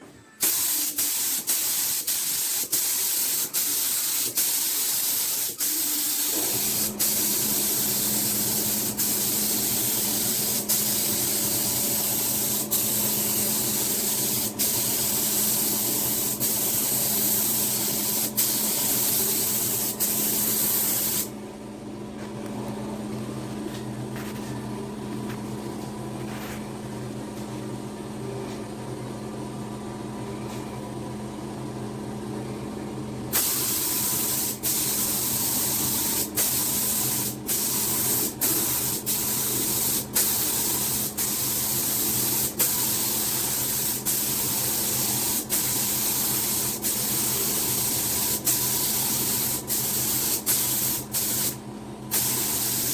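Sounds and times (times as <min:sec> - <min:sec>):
paint spray hissing: 0:00.4 - 0:21.3, 0:33.3 - 0:52.9.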